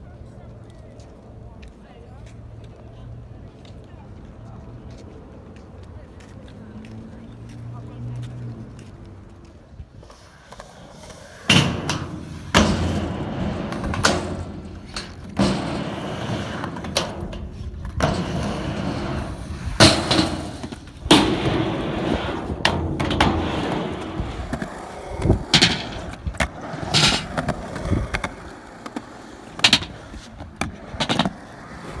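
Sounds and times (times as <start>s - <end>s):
sharp knocks and clatter: 11.5s - 24.7s
steady rough noise: 11.5s - 28.0s.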